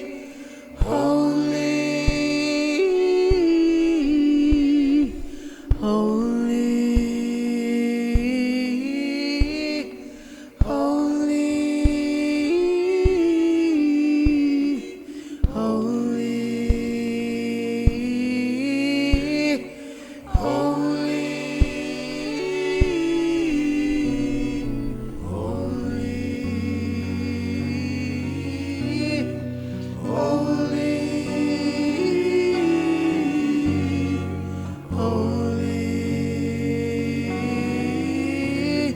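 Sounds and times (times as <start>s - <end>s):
person singing worship music: 0.0s - 38.9s
soft beat clicks: 0.8s - 7.5s, 8.1s - 9.9s, 10.6s - 11.2s, 11.8s - 13.5s, 14.2s - 19.7s, 20.3s - 26.7s.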